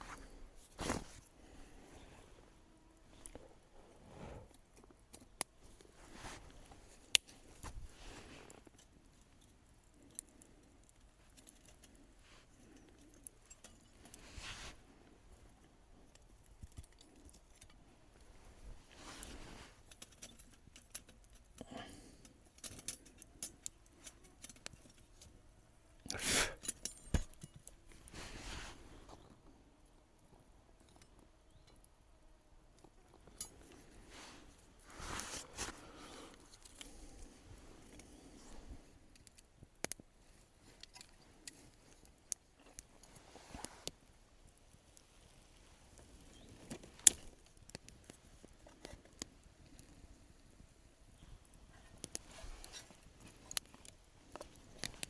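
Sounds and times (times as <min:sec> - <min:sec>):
short rustles: 0:00.0 - 0:01.8, 0:26.7 - 0:29.2, 0:33.6 - 0:37.3
light clicks and clinks: 0:03.1 - 0:14.5, 0:15.3 - 0:25.4, 0:26.6 - 0:28.2, 0:32.8 - 0:45.3.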